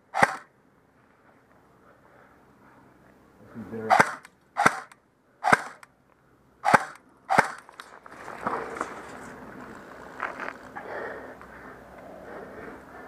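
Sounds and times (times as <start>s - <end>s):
airsoft gun shots: 0.1s - 0.5s, 3.9s - 5.8s, 6.6s - 7.7s
quiet rustling: 7.6s - 10.8s.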